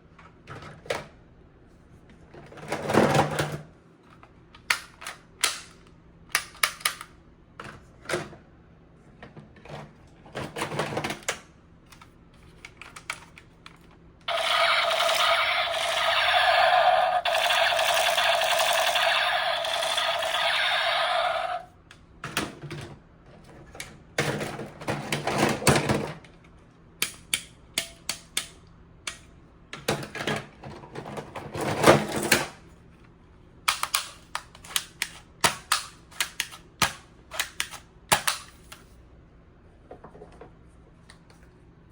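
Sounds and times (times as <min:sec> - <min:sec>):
toy gun clicks and rattles: 0:14.3 - 0:21.6, 0:33.7 - 0:38.7.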